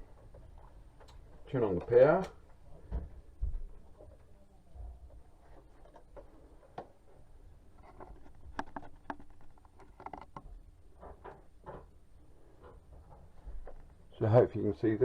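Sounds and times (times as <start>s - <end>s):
light clicks and taps: 7.8s - 11.9s.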